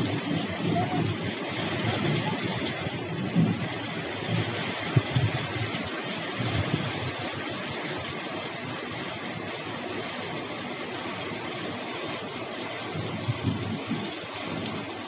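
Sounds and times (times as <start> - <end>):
light rain hissing: 0.0 - 15.0.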